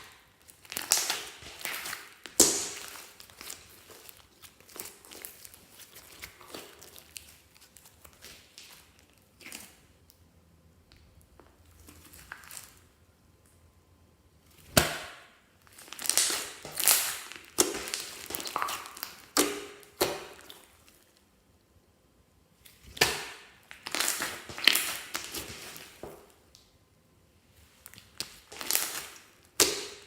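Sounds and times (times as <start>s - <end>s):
slime squeezed crackling pops: 15.8s - 20.6s.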